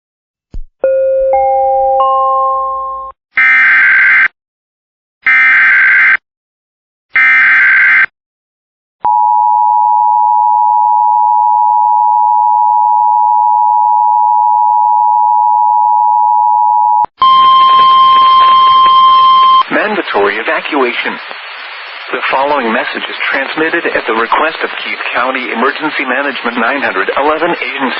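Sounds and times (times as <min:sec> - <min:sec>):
rising beeps: 0:10.1 - 0:19.6
two-tone attention signal: 0:16.0 - 0:19.6.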